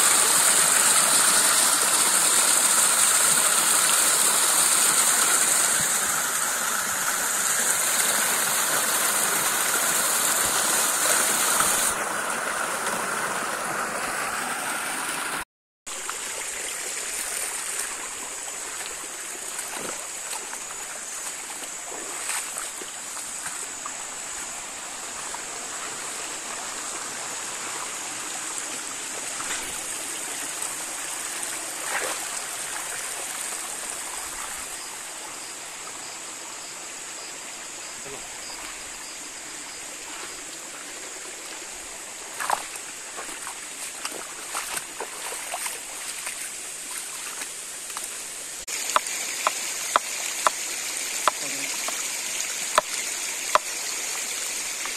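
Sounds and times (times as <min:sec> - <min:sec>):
stream running water: 0:00.0 - 0:54.9.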